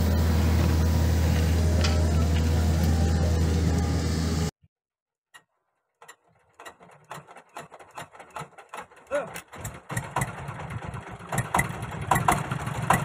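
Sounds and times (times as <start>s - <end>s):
diesel engine running: 0.0s - 4.5s, 6.8s - 13.0s
mechanical clicks and knocks: 5.3s - 10.5s.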